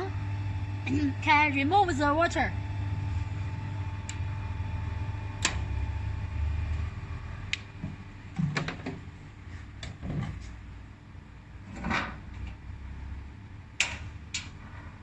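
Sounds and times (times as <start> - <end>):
water chiller humming: 0.0 - 11.6.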